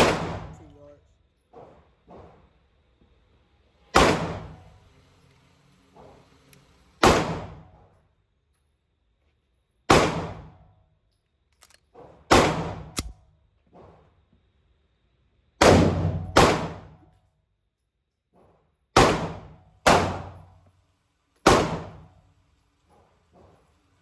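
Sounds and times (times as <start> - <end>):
pistol shots with echo: 0.0 - 0.6, 7.0 - 7.6, 9.9 - 10.5, 12.3 - 13.2, 15.6 - 16.9, 19.0 - 20.4, 21.5 - 22.0.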